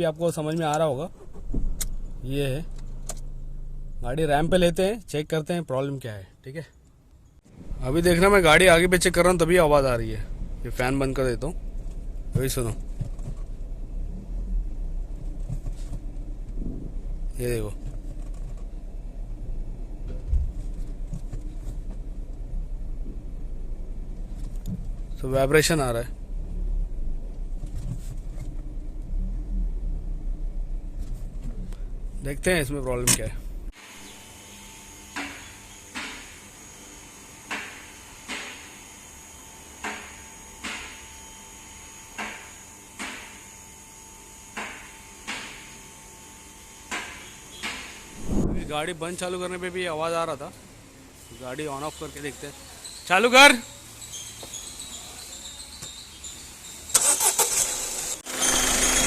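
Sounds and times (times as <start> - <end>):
car engine idling with rattly hum: 0.0 - 34.2
low thump: 48.2 - 49.0.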